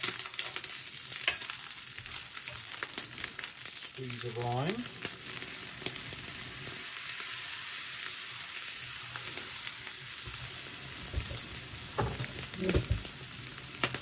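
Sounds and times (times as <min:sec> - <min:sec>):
rice sizzling in hot oil: 0:00.0 - 0:14.0
low knocks: 0:11.0 - 0:13.1.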